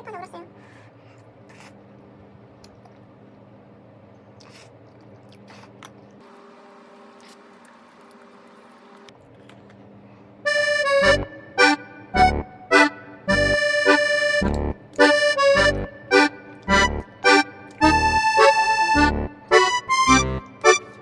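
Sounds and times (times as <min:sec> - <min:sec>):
loud music: 0:15.4 - 0:16.1, 0:16.7 - 0:21.0.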